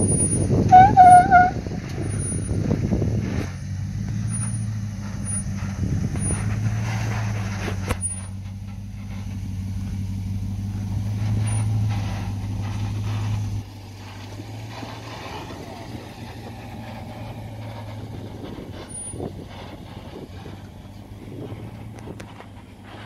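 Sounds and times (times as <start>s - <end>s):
engine running at low revs: 0.0s - 23.0s
rough scratchy noise: 0.0s - 23.0s.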